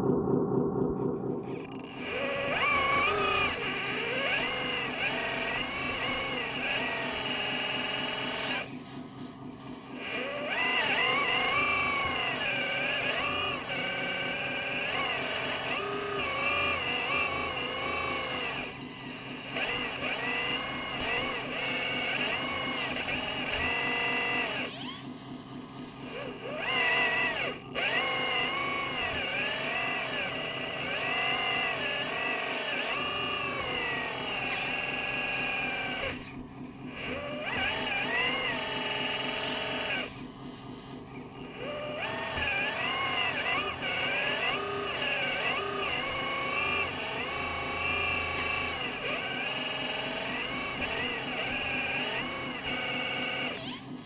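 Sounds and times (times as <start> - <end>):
fast steady pulsing: 0.0 - 8.8
electric motors whining: 0.0 - 54.0.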